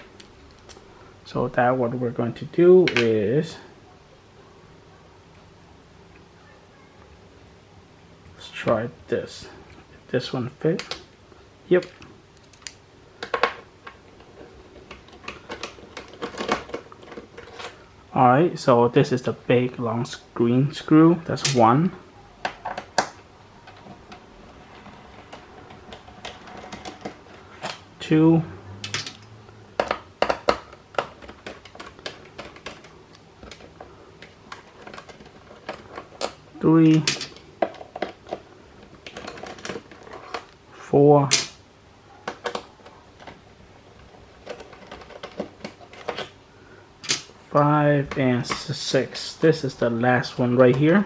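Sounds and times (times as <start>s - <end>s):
screwdriver and screw clicking and rattling: 11.8s - 17.8s, 28.9s - 38.4s, 44.4s - 46.4s.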